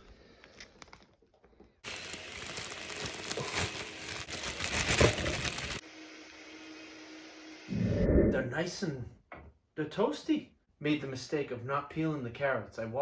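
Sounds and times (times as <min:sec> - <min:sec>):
plastic wrap crinkling: 0:01.8 - 0:05.8.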